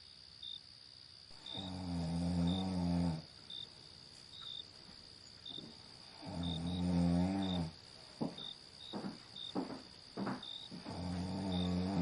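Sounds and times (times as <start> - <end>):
insects chirping: 0.0 - 12.0
person snoring: 1.4 - 3.3, 6.1 - 7.8, 10.8 - 12.0.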